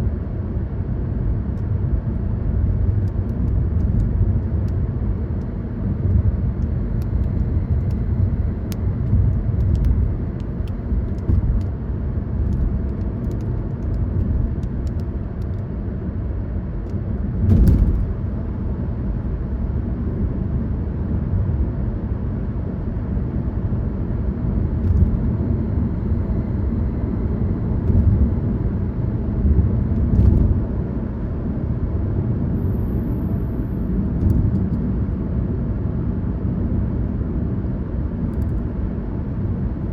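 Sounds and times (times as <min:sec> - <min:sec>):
car driving on road: 0:00.0 - 0:39.9.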